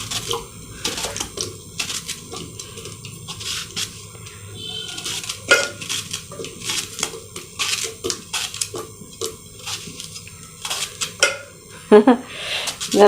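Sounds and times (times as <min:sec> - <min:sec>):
knife slicing plantain: 0:00.0 - 0:11.5.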